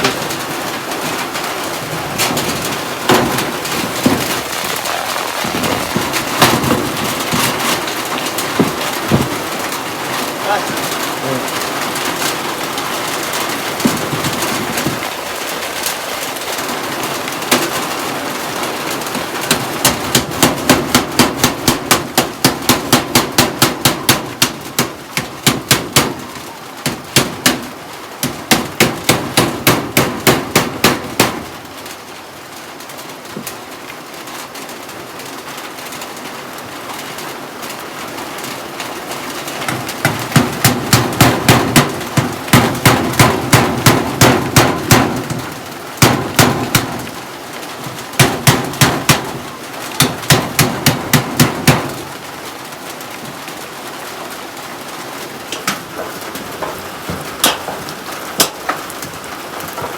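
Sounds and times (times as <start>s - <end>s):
heavy rain hiss: 0.0s - 59.9s
rapid hammer blows: 2.2s - 11.5s, 19.2s - 31.6s, 39.6s - 47.2s, 47.8s - 52.1s.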